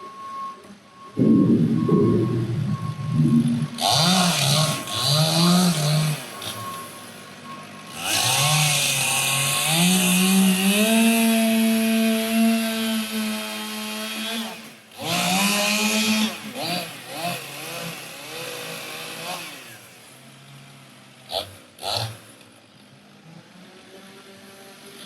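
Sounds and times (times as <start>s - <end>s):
chainsaw cutting into log: 3.8s - 6.6s, 7.9s - 19.9s, 21.3s - 22.5s.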